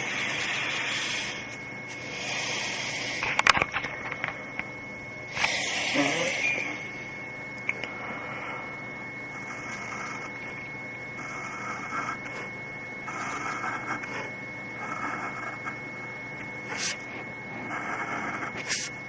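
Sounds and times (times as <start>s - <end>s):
drawing tool scratching paper: 0.0s - 3.2s, 11.2s - 12.5s, 13.1s - 15.8s, 16.6s - 19.0s.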